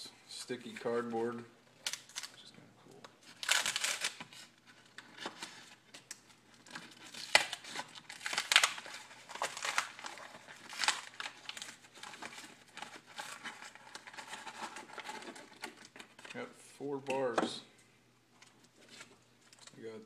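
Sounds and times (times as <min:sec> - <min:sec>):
cardboard packaging tearing: 0:03.2 - 0:16.0.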